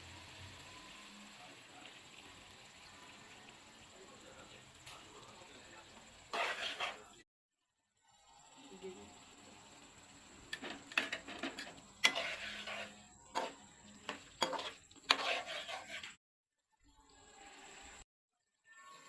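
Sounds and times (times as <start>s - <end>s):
utensils scraping a cooking pot: 5.9s - 7.2s, 10.4s - 16.2s.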